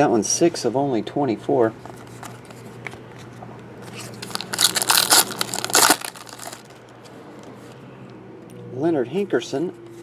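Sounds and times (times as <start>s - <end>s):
foil wrapper crinkling: 4.0s - 6.8s.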